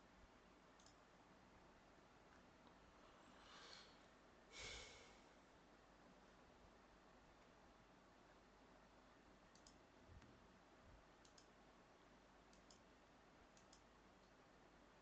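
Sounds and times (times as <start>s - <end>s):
computer mouse clicks: 0.8s - 1.0s, 9.5s - 10.4s, 11.2s - 11.6s, 12.5s - 12.9s, 13.5s - 14.4s.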